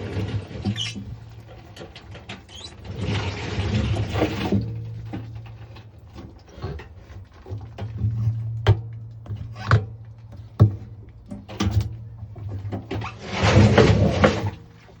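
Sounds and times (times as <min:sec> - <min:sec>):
washing machine humming: 0:10.2 - 0:15.0.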